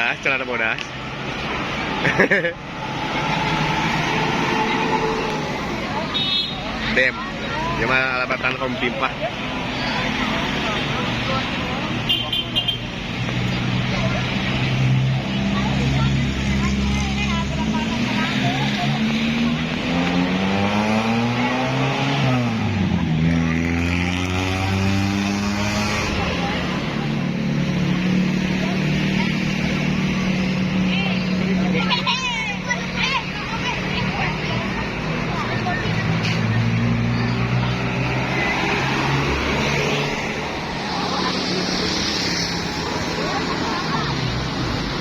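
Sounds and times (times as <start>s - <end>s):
roadside traffic noise: 0.0s - 45.0s
heavy vehicle engine humming: 0.8s - 7.8s, 26.0s - 45.0s.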